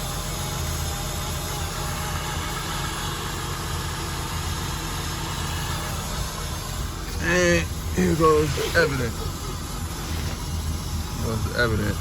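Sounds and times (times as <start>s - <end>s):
car engine idling: 0.0s - 12.0s.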